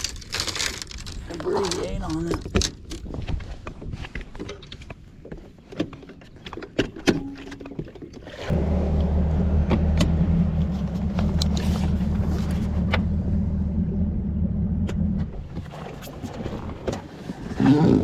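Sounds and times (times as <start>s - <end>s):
outboard motor drone: 8.5s - 16.3s.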